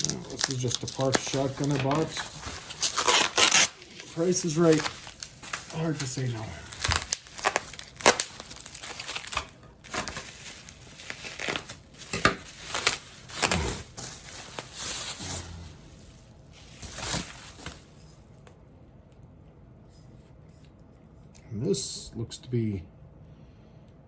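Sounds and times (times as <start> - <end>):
bubble wrap crinkling and tearing: 0.0 - 18.2.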